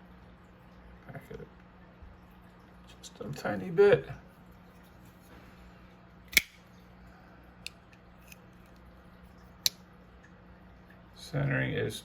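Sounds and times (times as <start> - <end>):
folding knife blade clicking: 6.3 - 6.6.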